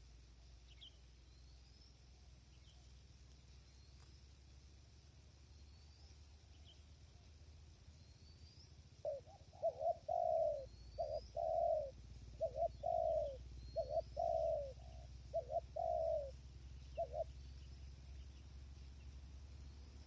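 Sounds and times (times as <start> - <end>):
dove cooing: 8.9 - 17.8.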